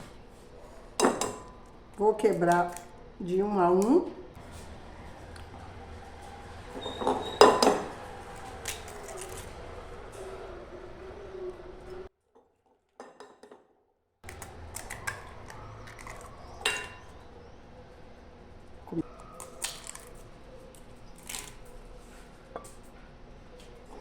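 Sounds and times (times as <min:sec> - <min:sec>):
eggs cracking against bowl rim: 0:14.3 - 0:17.2, 0:19.3 - 0:21.7.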